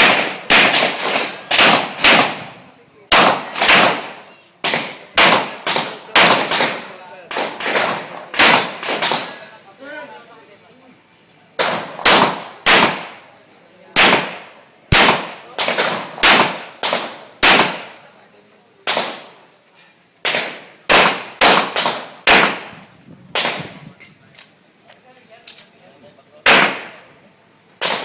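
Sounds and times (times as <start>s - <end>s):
gunshots with ringing tail: 0.0s - 9.4s, 14.0s - 18.0s, 20.3s - 22.7s.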